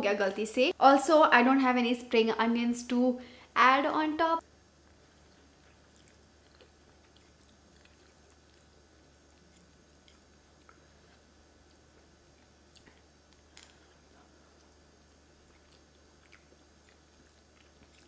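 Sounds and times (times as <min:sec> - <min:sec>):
low steady hum: 0:00.0 - 0:18.0
faint chewing of noodles: 0:04.8 - 0:18.0.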